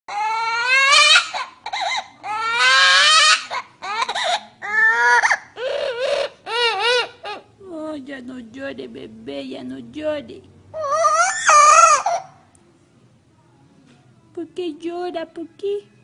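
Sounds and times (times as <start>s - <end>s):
parrot mimicking baby crying: 0.1s - 7.5s, 10.7s - 12.5s.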